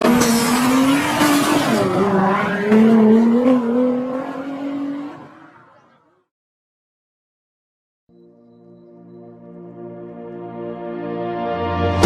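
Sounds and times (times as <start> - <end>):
car whine at speed: 0.0 - 6.3
road noise: 0.0 - 6.3.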